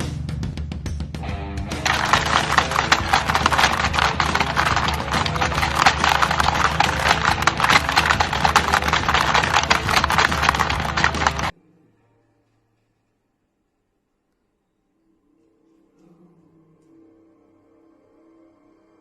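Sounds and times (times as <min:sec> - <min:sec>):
rapid clattering clicks: 0:01.8 - 0:11.5.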